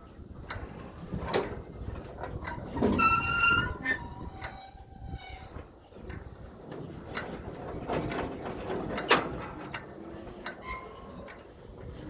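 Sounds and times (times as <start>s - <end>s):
baler knotters clicking and clanking: 0.0s - 12.0s
low squeak: 2.5s - 5.7s, 10.6s - 11.4s
loud metal squeal: 2.8s - 5.6s.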